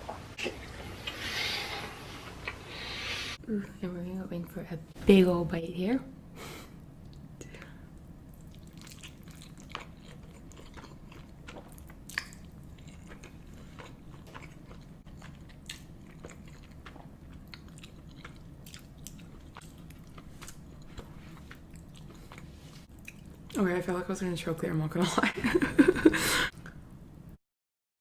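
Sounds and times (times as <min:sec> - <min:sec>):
steady low hum: 0:00.0 - 0:27.4
wet chewing and smacking: 0:08.3 - 0:23.6.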